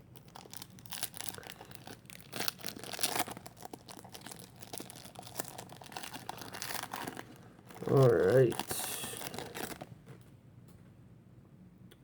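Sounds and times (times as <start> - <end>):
plastic wrapper tearing and crinkling: 0.0 - 10.2.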